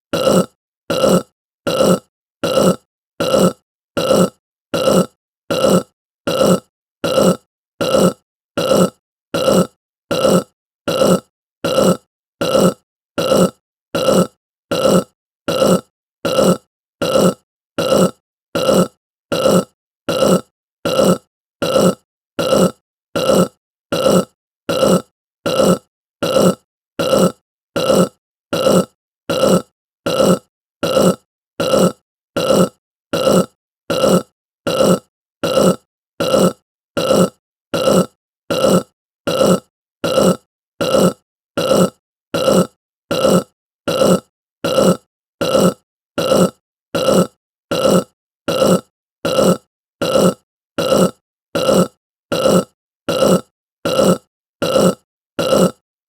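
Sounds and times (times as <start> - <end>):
person burping: 0.1 - 55.8.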